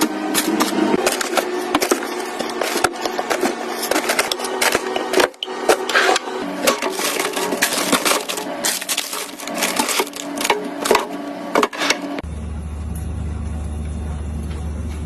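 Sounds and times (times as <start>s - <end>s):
small containers clicking and knocking: 0.0s - 12.0s.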